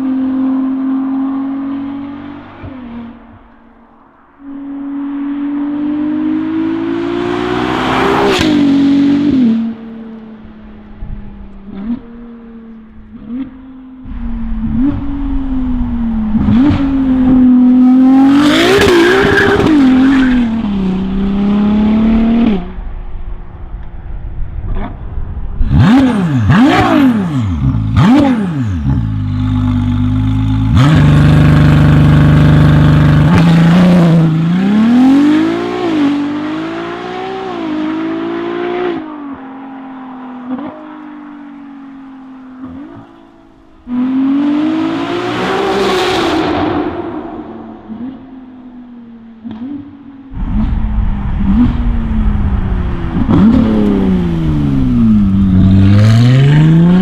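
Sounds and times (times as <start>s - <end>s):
car engine revving: 0.0s - 57.0s.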